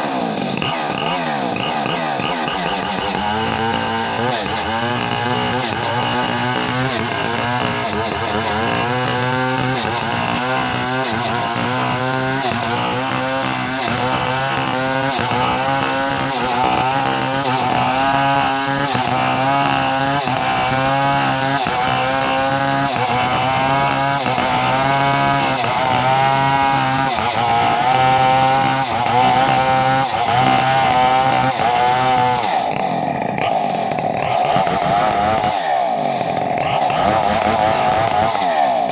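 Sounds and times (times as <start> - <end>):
chainsaw running at high revs: 0.0 - 38.9.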